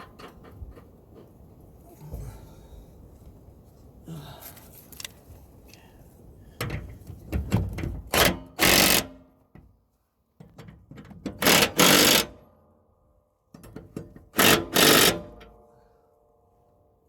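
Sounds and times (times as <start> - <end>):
impact wrench rattling: 14.3 - 15.4.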